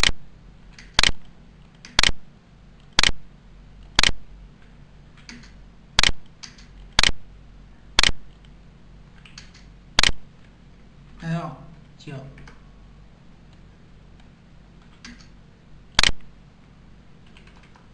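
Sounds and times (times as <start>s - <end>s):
sharp clicks: 0.0s - 2.2s, 2.8s - 3.2s, 3.8s - 7.2s, 8.0s - 10.2s, 14.2s - 15.4s, 16.0s - 16.3s.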